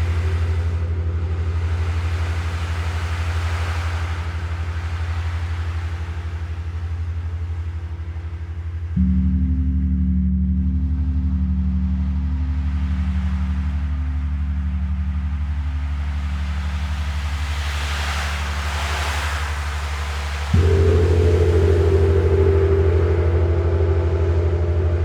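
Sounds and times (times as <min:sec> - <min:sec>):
low throbbing gong tones: 0:00.0 - 0:18.8, 0:19.6 - 0:25.0
wavering hum: 0:00.0 - 0:25.0
gong struck: 0:09.0 - 0:15.4, 0:20.5 - 0:25.0.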